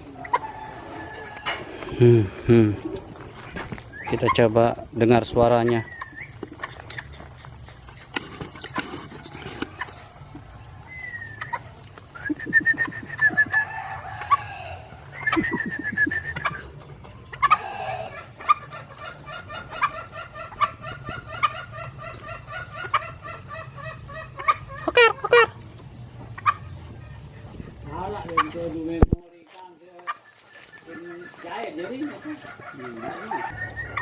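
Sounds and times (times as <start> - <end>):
steady high hiss: 0.0 - 16.8
junglefowl cock calling: 0.0 - 25.6, 30.9 - 34.0.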